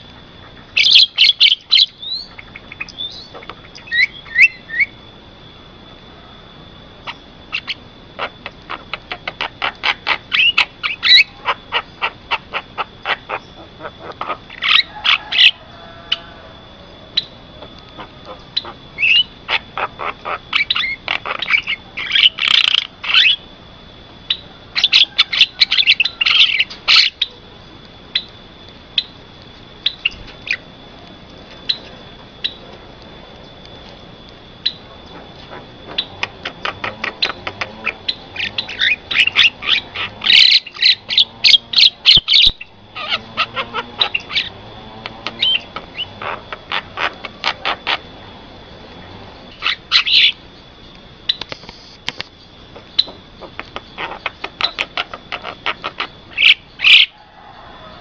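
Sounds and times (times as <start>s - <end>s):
myna chattering and clicking: 0.0s - 3.9s, 7.0s - 15.5s, 27.8s - 56.6s.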